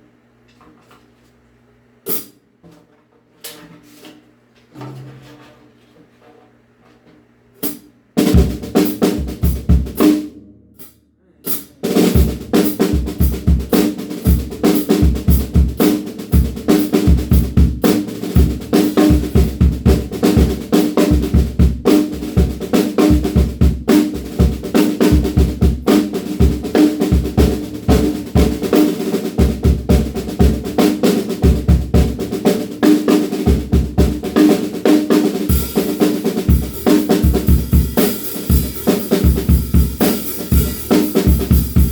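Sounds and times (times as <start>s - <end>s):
bass drum and snare groove: 7.6s - 10.9s, 11.5s - 41.9s
cymbals: 35.5s - 41.9s.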